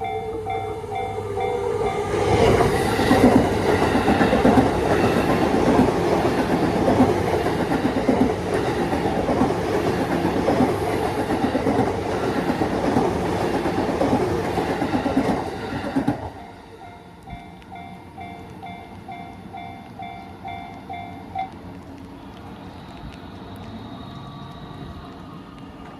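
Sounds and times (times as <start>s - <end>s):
train wheels clattering on rails: 0.0s - 16.6s.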